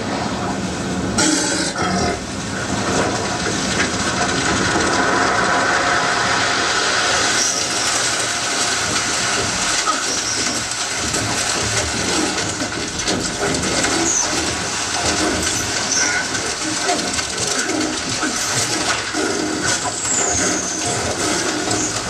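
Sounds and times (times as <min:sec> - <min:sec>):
dense rushing noise with rumble: 0:00.0 - 0:22.0.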